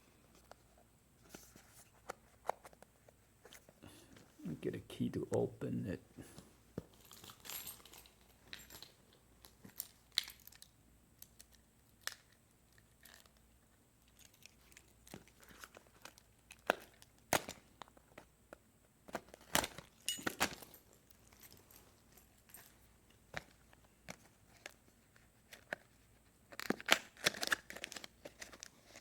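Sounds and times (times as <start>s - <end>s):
cardboard and plastic crinkling: 23.4s - 29.0s.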